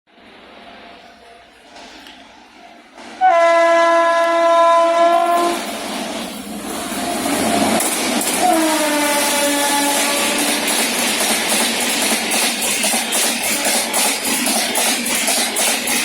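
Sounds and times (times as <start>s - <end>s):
train passing rush and clatter: 0.1s - 16.0s
locomotive horn blast: 3.2s - 5.7s, 8.4s - 10.5s.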